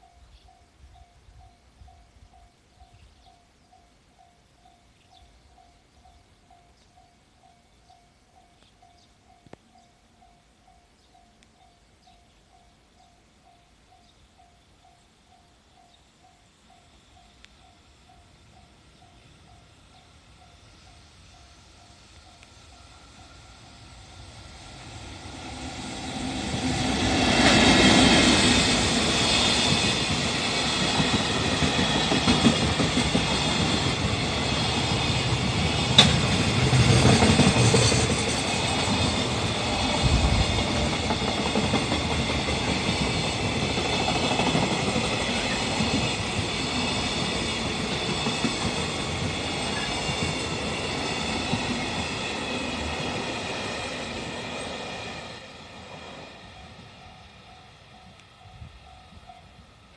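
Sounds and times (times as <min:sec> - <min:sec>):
freight train rumble: 0:00.0 - 0:59.9
wheels clacking over rail joints: 0:26.3 - 0:56.1.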